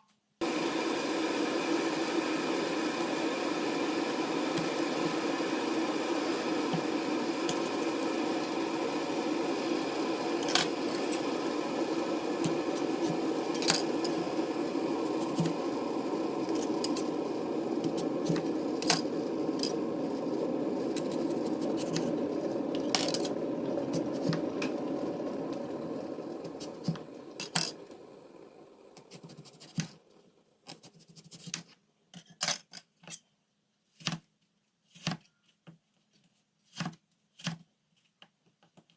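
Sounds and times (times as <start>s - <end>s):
kitchen appliance humming: 0.4s - 31.5s.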